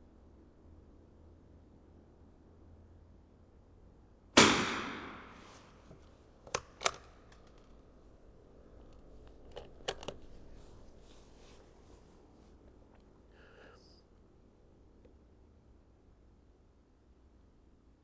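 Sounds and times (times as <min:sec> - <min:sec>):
rifle shot: 0:04.4 - 0:05.6
rifle handling clicks: 0:06.4 - 0:07.8, 0:08.7 - 0:10.5.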